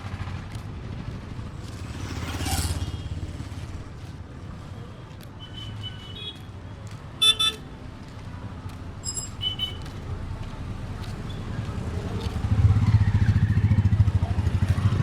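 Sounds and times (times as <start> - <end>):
higher-pitched vehicle horn: 7.2 - 7.6
vehicle horn honking: 7.2 - 7.6.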